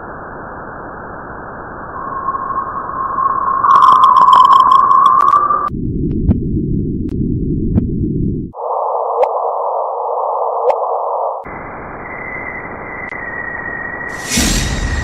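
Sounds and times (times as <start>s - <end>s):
steady electronic tone: 1.5s - 5.7s
sharp bright hiss: 14.1s - 15.0s.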